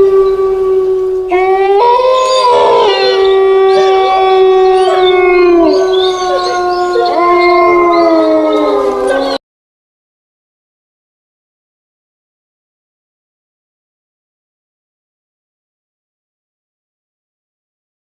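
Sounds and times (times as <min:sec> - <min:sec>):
dogs howling together: 0:00.0 - 0:09.4.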